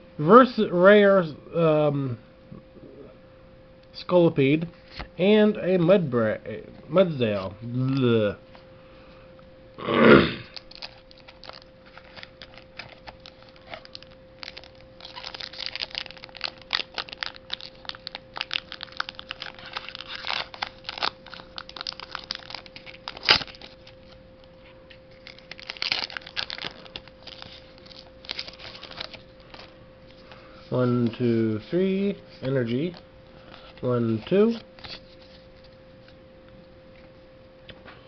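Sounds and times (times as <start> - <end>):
faint steady hum: 0.0 - 38.0
foil wrapper crinkling and tearing: 10.5 - 24.2, 24.9 - 31.2, 31.8 - 36.2
trading cards being handled: 10.6 - 24.2, 24.9 - 36.2.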